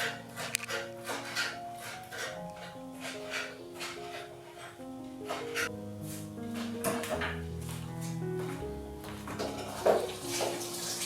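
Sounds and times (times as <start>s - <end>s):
slow soft background music: 0.0s - 11.0s.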